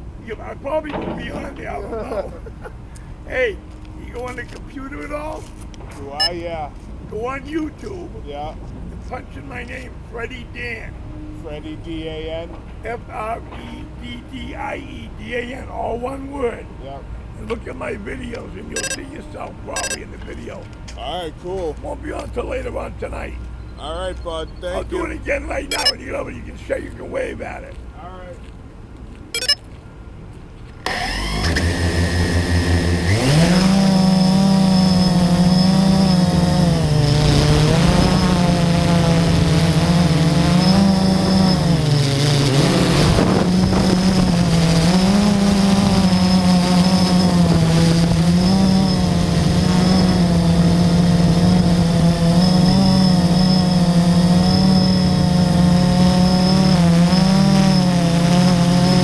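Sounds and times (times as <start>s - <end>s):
drone electric motors buzzing: 18.6s - 20.2s, 25.7s - 26.0s, 29.4s - 29.6s, 30.8s - 59.0s.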